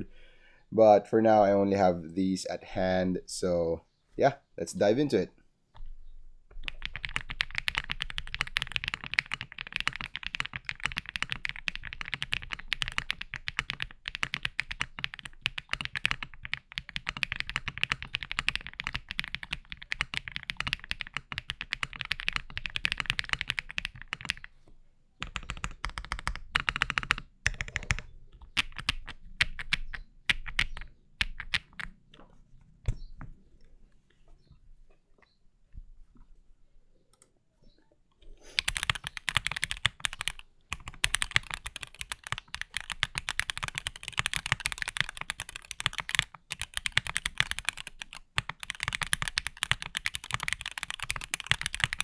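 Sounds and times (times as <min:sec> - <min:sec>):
mechanical keyboard typing: 0:06.6 - 0:24.5, 0:25.2 - 0:31.9, 0:38.6 - 0:52.0.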